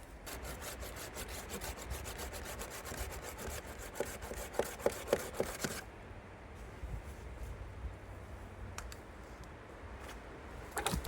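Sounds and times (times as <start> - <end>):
hand saw cutting wood: 0.3 - 5.8.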